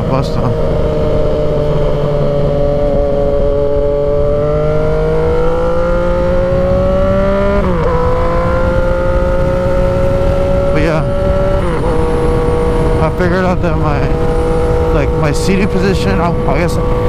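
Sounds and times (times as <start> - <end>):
motorcycle engine revving: 0.0 - 17.0.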